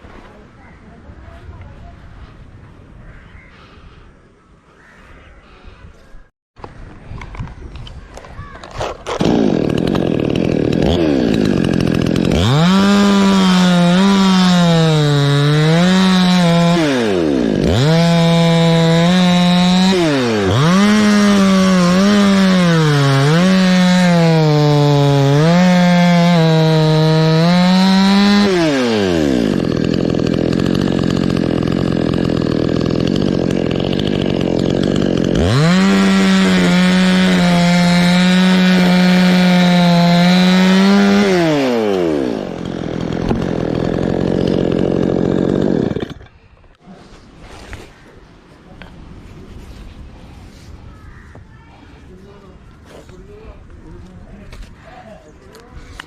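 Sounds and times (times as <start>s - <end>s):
chainsaw cutting wood: 8.6s - 46.8s.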